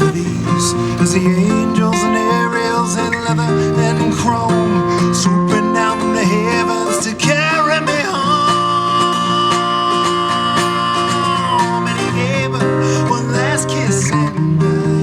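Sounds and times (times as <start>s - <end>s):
acoustic guitar playing: 0.0s - 15.0s.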